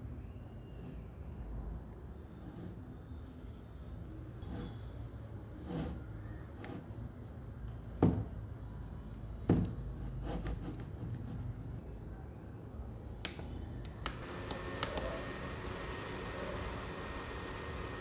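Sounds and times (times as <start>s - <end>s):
small fan whirring: 2.1s - 7.0s, 13.2s - 18.0s.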